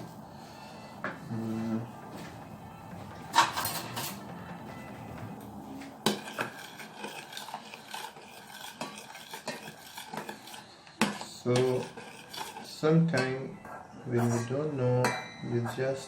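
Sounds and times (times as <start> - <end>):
metal spoon scraping a pot: 3.3 - 4.5, 6.0 - 16.0.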